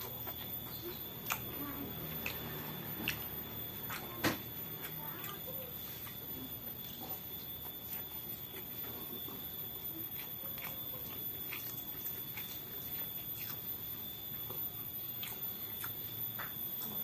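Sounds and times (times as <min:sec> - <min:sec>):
person chewing with wet smacks: 0:00.0 - 0:17.0
faint high-pitched tone: 0:00.7 - 0:13.1.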